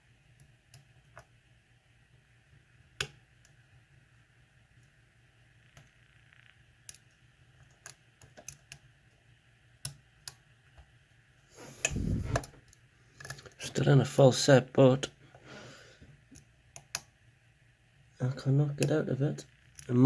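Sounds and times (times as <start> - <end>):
short rush of noise: 11.6 - 12.6.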